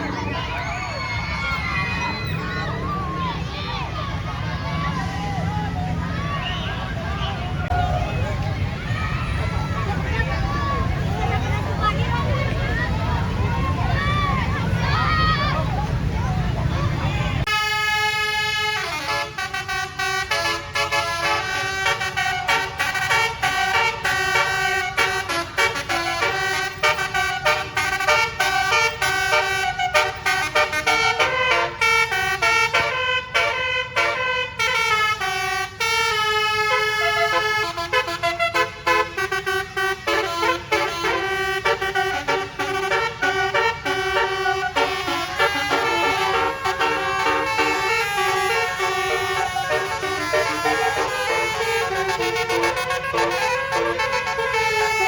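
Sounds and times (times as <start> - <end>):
musical bus horn melody: 17.4 - 55.0.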